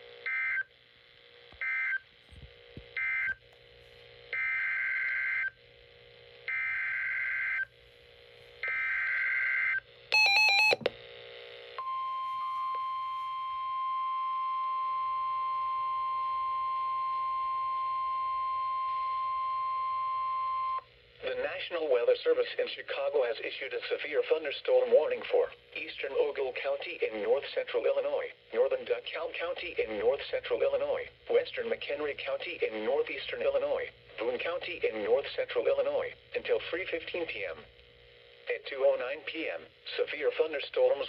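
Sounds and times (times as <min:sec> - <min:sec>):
steady warning alarm tone: 0:08.6 - 0:10.9.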